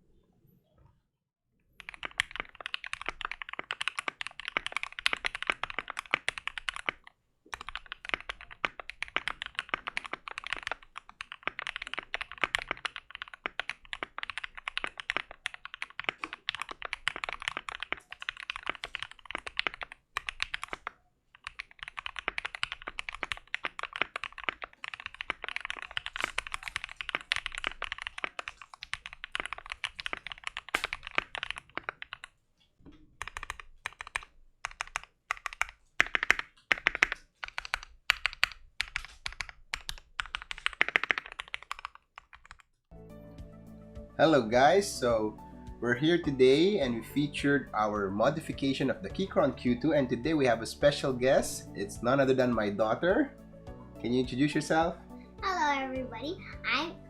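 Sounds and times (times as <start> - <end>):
fast mechanical keyboard typing: 1.8 - 32.3, 33.2 - 42.7.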